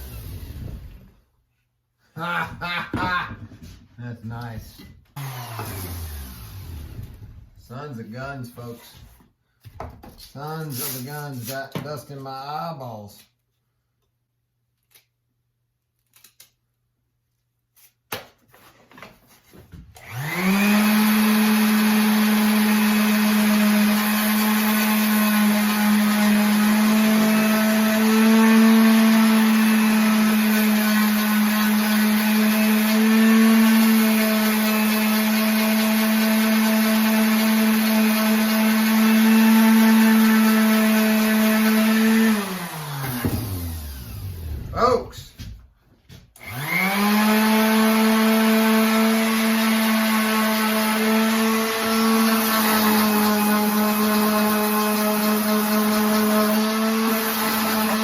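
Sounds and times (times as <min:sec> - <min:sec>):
power tool motor running: 0:00.0 - 0:01.2, 0:05.2 - 0:07.6, 0:20.0 - 0:44.8, 0:46.4 - 0:58.0.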